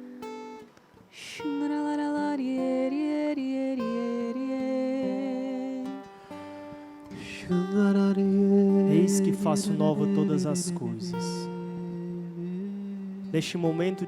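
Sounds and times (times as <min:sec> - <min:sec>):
person singing worship song: 0:01.1 - 0:06.4, 0:07.1 - 0:14.0.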